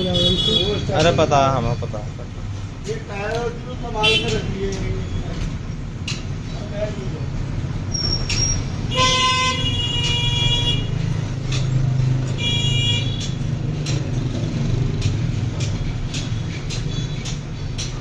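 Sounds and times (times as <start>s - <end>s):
vehicle horn honking: 0.0s - 0.8s, 8.9s - 10.9s, 12.4s - 13.2s
traffic rumble: 0.0s - 18.0s.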